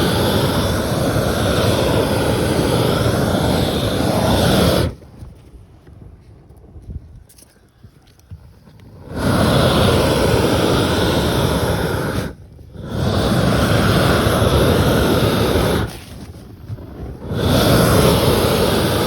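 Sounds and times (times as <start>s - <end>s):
torch flame blowing: 0.0s - 5.4s, 8.2s - 19.0s.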